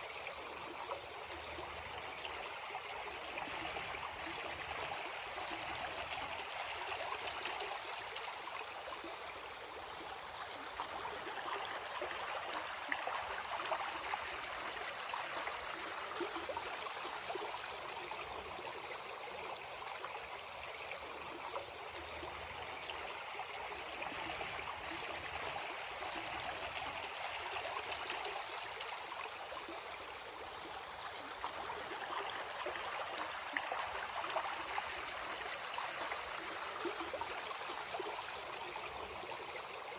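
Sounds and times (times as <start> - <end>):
creek water rushing over rocks: 0.0 - 39.9.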